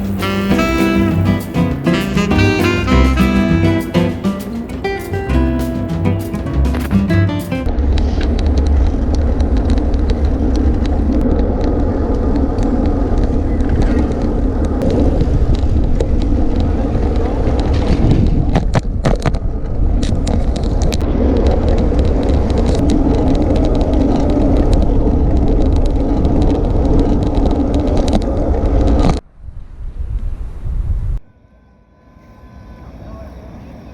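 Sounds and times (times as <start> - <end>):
bicycle road noise: 0.0 - 3.9, 7.7 - 29.2
wind rush on microphone: 7.7 - 31.2.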